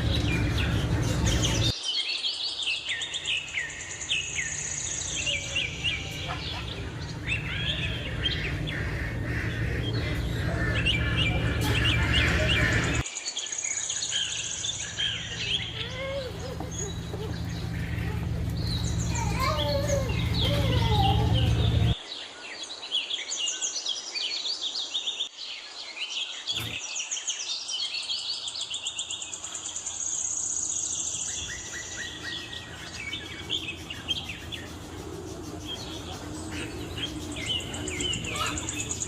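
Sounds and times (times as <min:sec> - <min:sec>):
small birds chirping and trilling: 0:00.0 - 0:39.0
low steady hum: 0:04.8 - 0:13.0, 0:14.8 - 0:22.0.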